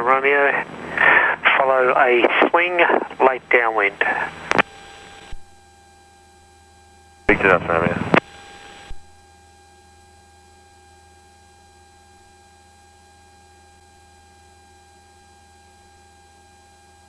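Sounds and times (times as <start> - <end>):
faint electrical hum and hiss: 0.0 - 5.4, 7.3 - 9.1.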